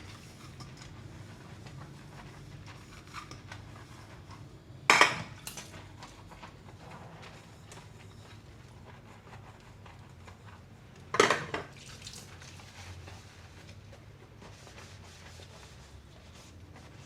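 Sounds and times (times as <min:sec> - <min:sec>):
faint dish handling sounds: 0:10.2 - 0:11.7.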